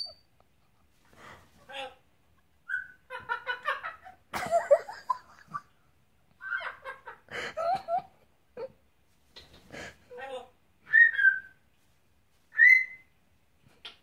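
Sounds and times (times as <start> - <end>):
parrot whistle: 10.9 - 11.6, 12.5 - 13.1.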